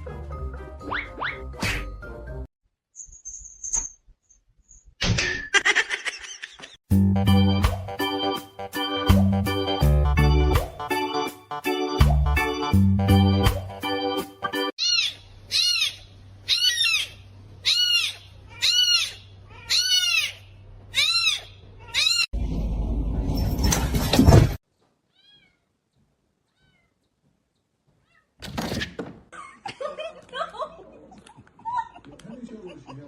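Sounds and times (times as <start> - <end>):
cat meowing: 14.8 - 20.4, 21.0 - 22.3, 25.1 - 25.7, 26.5 - 27.0.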